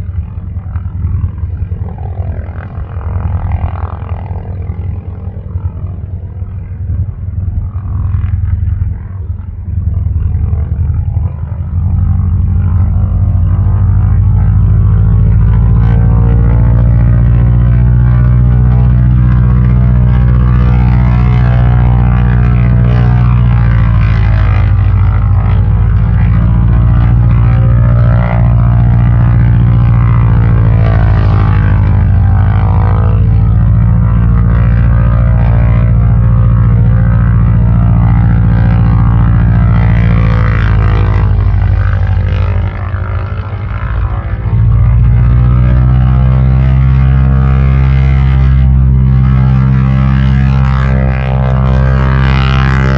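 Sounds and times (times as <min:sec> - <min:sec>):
radial aircraft engine running: 0:00.0 - 0:52.9.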